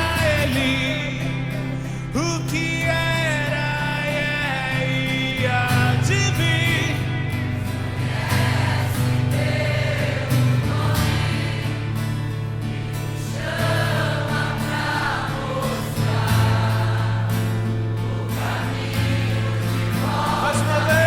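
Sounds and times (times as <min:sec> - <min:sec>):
choir singing gospel song: 0:06.8 - 0:21.0.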